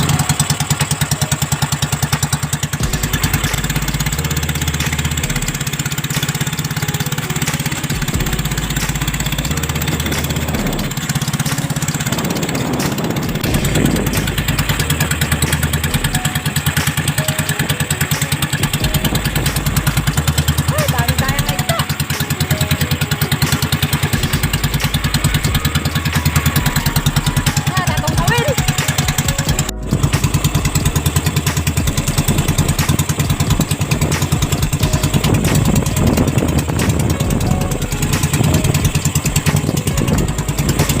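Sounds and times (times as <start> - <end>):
small boat engine running: 0.0 - 41.0.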